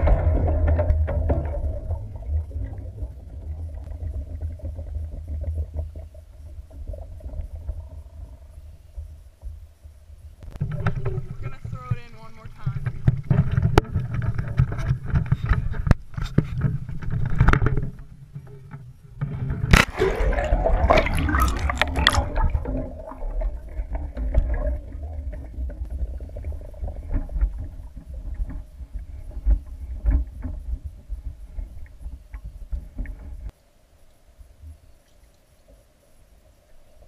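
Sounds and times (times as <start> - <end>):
low rumbling and knocks: 0.0 - 33.5
underwater gurgling: 0.0 - 33.5
muffled underwater rumble: 0.0 - 37.0
loud splash into pool: 19.7 - 23.5.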